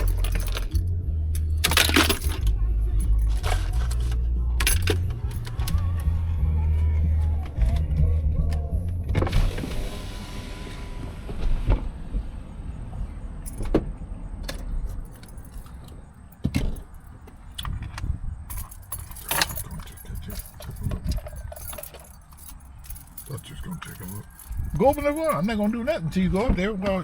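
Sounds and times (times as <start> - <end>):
keys jangling: 0.0 - 6.2, 13.3 - 25.9
low rumble: 0.0 - 16.1.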